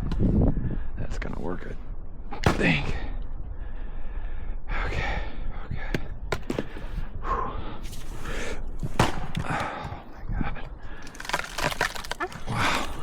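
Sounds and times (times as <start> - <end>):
man breathing hard and gasping: 3.4 - 11.3.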